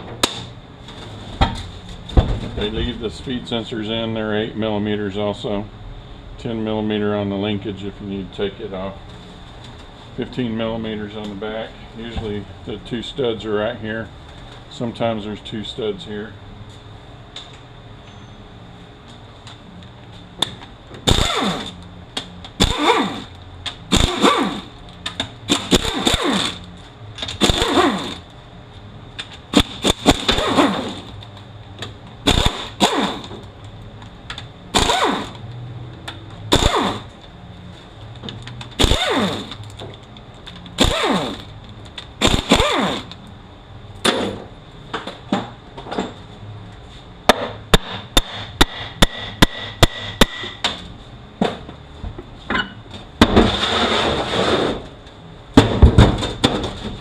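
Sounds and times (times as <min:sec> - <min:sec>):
power tool spinning up and down: 0:21.1 - 0:21.8, 0:22.6 - 0:24.7, 0:25.5 - 0:26.7, 0:27.4 - 0:28.2, 0:29.5 - 0:31.1, 0:32.3 - 0:33.4, 0:34.7 - 0:35.4, 0:36.5 - 0:37.1, 0:38.8 - 0:39.6, 0:40.8 - 0:41.5, 0:42.2 - 0:43.2.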